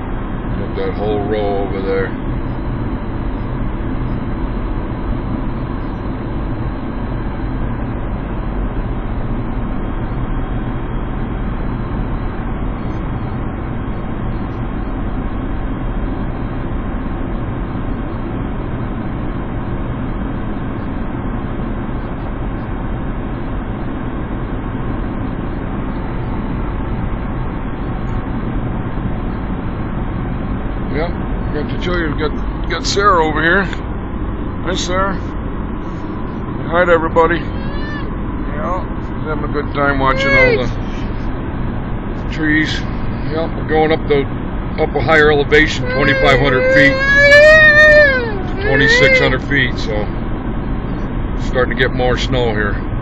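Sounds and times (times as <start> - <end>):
low hum: 0.0 - 53.0.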